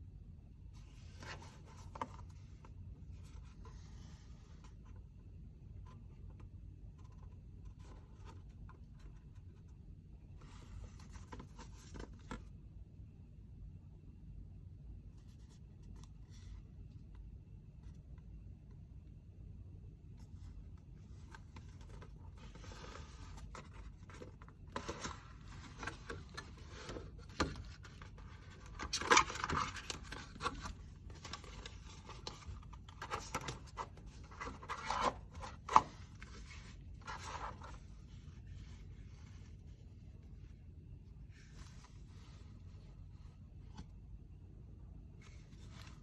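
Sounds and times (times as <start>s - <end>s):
packaging rustling and scraping: 21.2s - 38.9s.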